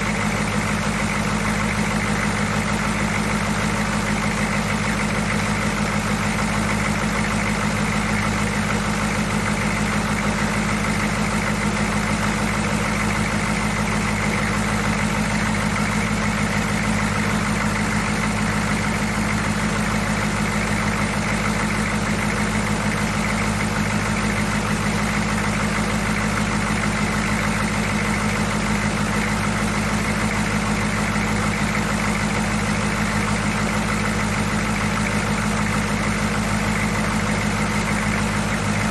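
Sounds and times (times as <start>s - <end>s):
diesel engine idling: 0.0s - 38.9s.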